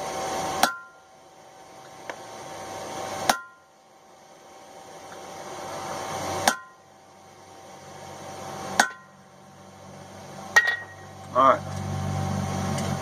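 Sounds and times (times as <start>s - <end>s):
hammer striking chisel on steel: 0.6s - 1.0s, 3.3s - 3.6s, 6.4s - 6.8s, 8.8s - 9.1s, 10.6s - 11.0s.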